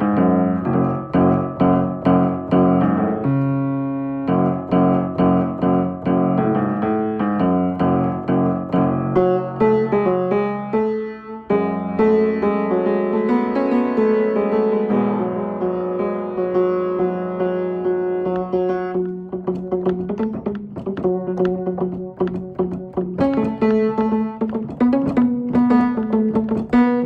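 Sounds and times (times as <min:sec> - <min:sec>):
quick plucked notes: 0:00.0 - 0:10.0, 0:18.2 - 0:27.0
keyboard notes and held tones: 0:00.0 - 0:27.0.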